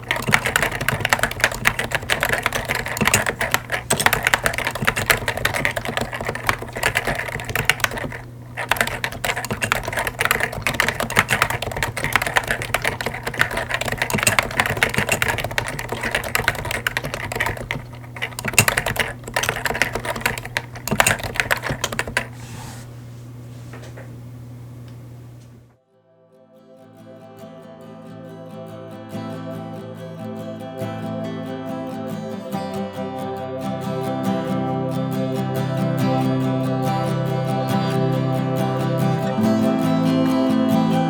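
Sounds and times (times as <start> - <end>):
fast keyboard typing: 0.0 - 22.4
steady low hum: 0.0 - 25.8.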